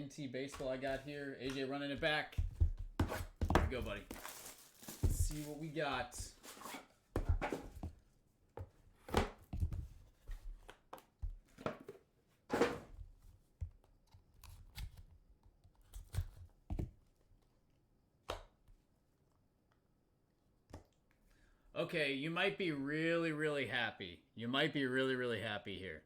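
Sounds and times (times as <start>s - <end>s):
cardboard box tapping and knocking: 1.5s - 4.3s
wrapper rustling: 3.8s - 5.8s.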